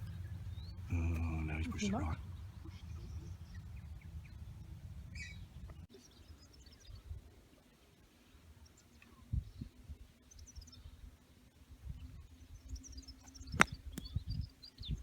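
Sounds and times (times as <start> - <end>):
birds chirping: 0.0 - 7.0, 12.0 - 15.0.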